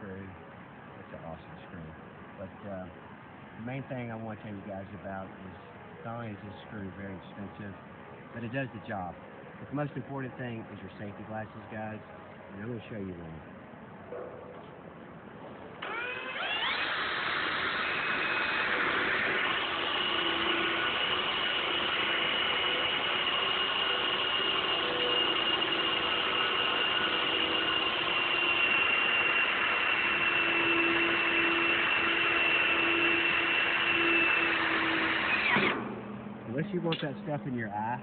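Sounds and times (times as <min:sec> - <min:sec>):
power drill whining: 0:15.8 - 0:36.1.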